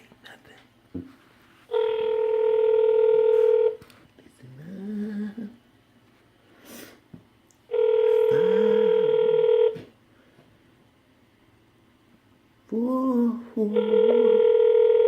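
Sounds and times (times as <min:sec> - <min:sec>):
low hum of a voice: 0:00.0 - 0:00.7, 0:04.2 - 0:05.6, 0:07.9 - 0:09.4, 0:12.6 - 0:14.9
telephone ringback tone: 0:01.7 - 0:03.8, 0:07.7 - 0:09.8, 0:13.7 - 0:15.0.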